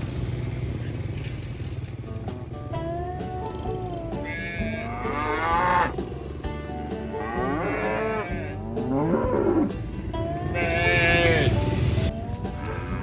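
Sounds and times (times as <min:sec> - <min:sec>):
cattle mooing: 0:04.0 - 0:06.2, 0:07.0 - 0:13.0.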